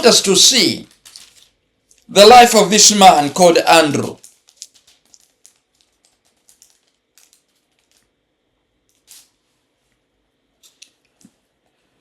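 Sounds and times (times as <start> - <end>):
paper pages rustling: 0.8 - 1.6, 4.2 - 8.2.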